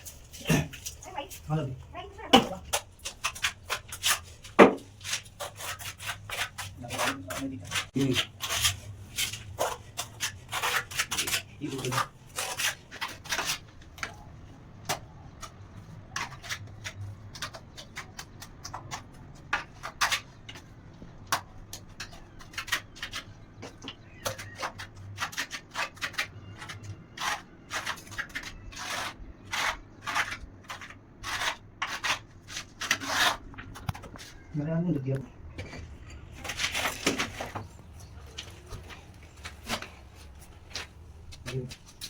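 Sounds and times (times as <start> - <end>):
trowel scraping mortar: 2.3 - 14.2, 21.7 - 34.4.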